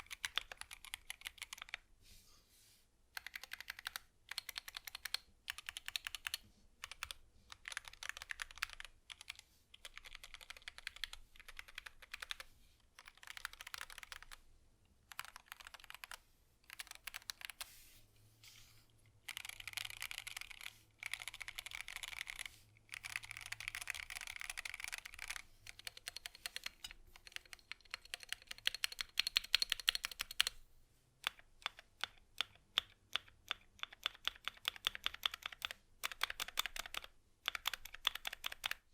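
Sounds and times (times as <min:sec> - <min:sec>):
mechanical keyboard typing: 0:00.0 - 0:01.8, 0:03.2 - 0:14.4, 0:15.1 - 0:17.6, 0:19.2 - 0:30.6, 0:31.2 - 0:38.9.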